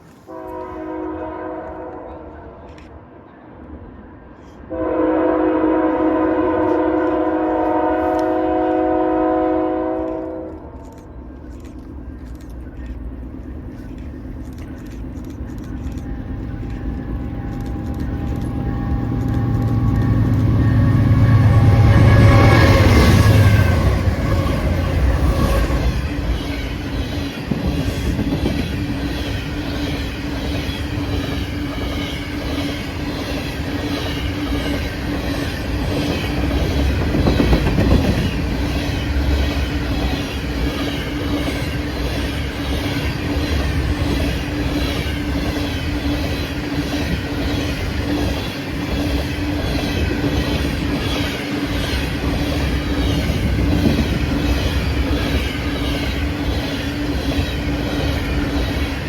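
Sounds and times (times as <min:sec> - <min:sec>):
train wheels rumbling on rail: 0:00.0 - 0:59.0
rapid regular clicking of wheels: 0:10.9 - 0:16.9.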